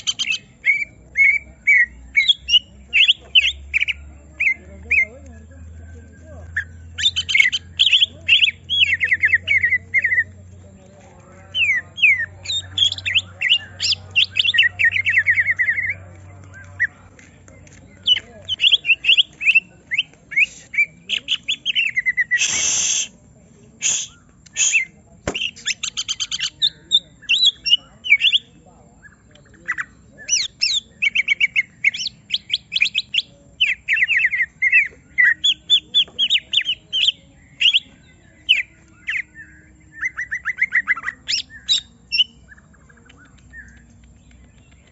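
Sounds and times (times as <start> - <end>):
bird whistling and chirping: 0.0 - 5.1, 6.5 - 10.3, 11.5 - 16.0, 18.0 - 23.1, 23.8 - 44.9
harsh loud bird call: 18.1 - 23.2.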